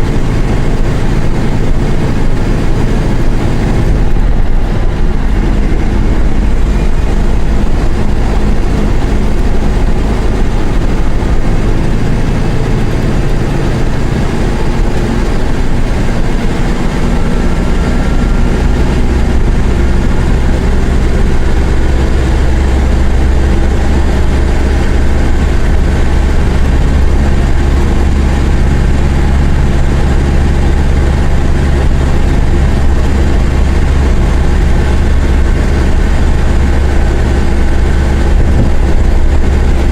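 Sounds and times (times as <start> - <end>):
bus diesel engine running: 0.0 - 39.9.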